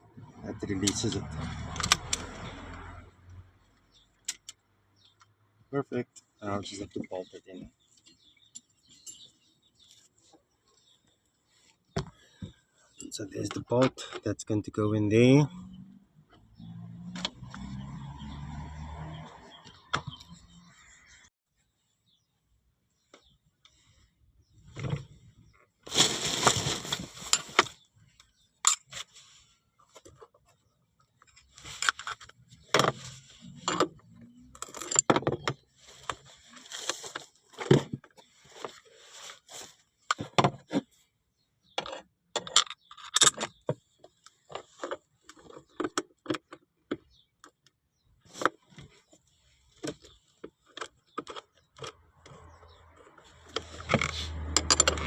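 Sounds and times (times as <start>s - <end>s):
hand tools clinking and scraping: 25.9s - 27.7s, 31.3s - 40.8s, 53.4s - 55.0s.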